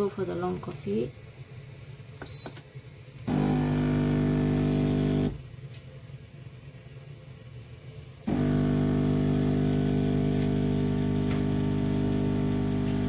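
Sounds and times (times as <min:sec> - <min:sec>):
control panel beep: 0:02.2 - 0:02.6
espresso machine pump humming: 0:03.2 - 0:05.4, 0:08.3 - 0:13.0.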